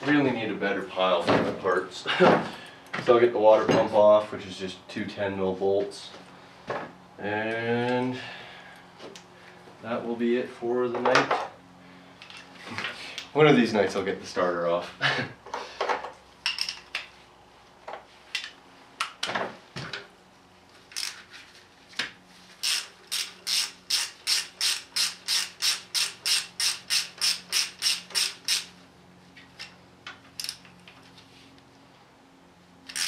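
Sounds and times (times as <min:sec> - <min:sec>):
ratchet wrench clicking: 0:20.9 - 0:21.2, 0:22.6 - 0:28.7, 0:30.4 - 0:30.6.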